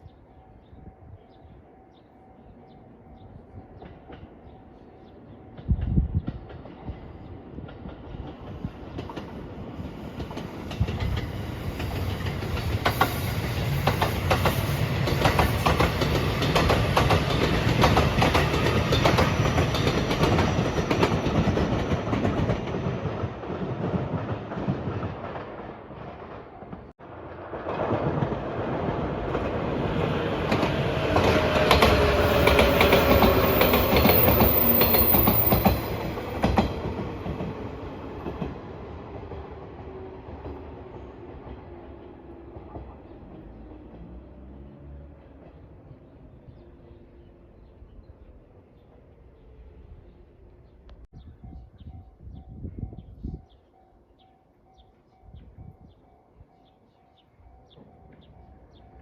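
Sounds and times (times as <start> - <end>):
clickety-clack of rail joints: 3.7 - 4.8, 5.5 - 46.1
train wheels running on rails: 5.5 - 45.8.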